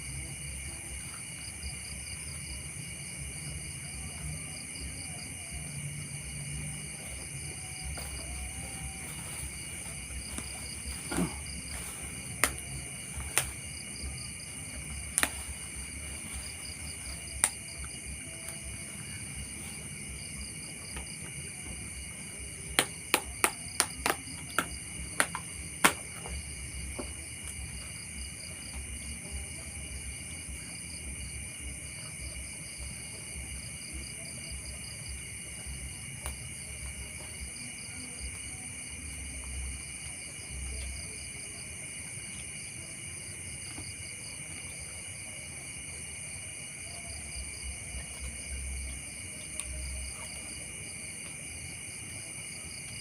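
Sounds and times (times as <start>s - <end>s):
crickets trilling: 0.0s - 53.0s.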